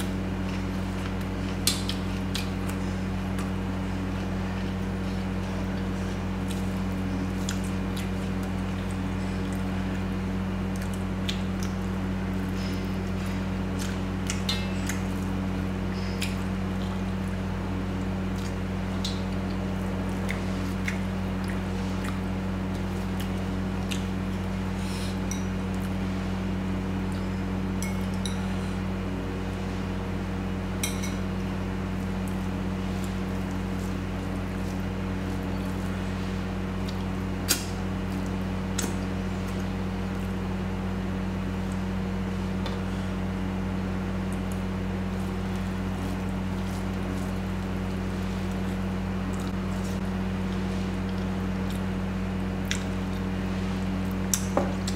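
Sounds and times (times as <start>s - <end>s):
steady low hum: 0.0s - 54.9s
close-miked chewing and mouth clicks: 0.4s - 3.6s, 18.3s - 24.1s, 52.6s - 53.2s.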